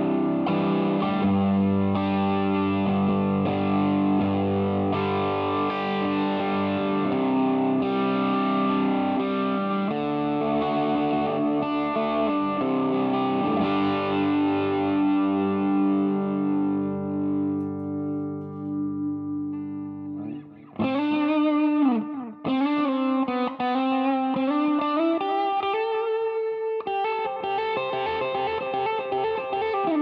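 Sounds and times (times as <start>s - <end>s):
distorted electric guitar: 0.0s - 30.0s.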